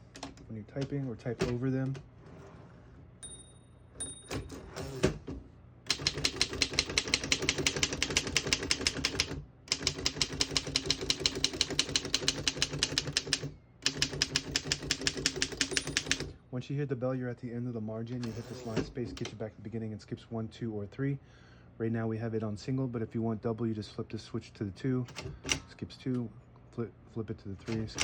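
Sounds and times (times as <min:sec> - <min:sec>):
manual typewriter typing: 0:05.9 - 0:16.3, 0:27.6 - 0:28.0.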